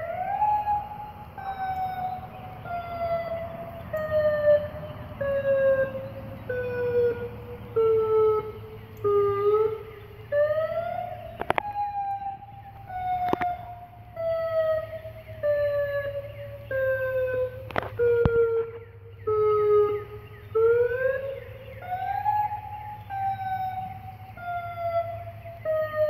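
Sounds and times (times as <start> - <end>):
pulsed wailing siren: 0.0 - 26.0
sharp clicks: 11.3 - 13.6.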